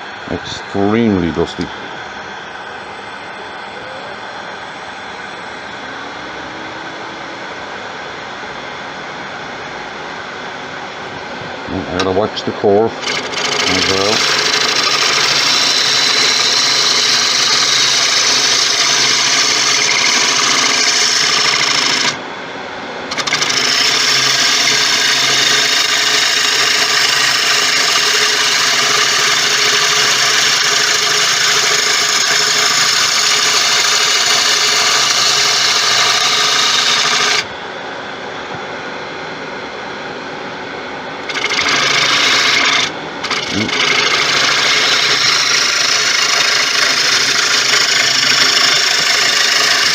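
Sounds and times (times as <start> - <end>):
lathe running hum: 0.0 - 49.9
gouge cutting spinning wood: 11.9 - 22.2, 23.1 - 37.5, 41.2 - 49.9.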